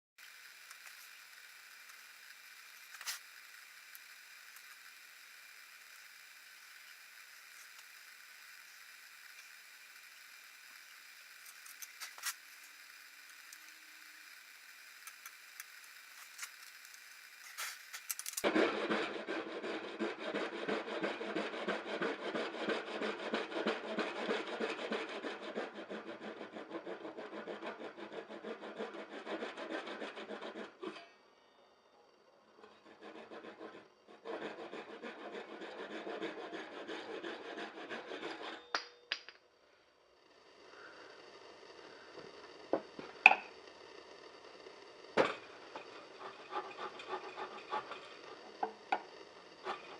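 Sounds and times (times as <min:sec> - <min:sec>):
hand saw cutting wood: 0:17.4 - 0:31.0, 0:32.6 - 0:38.7, 0:45.2 - 0:49.9.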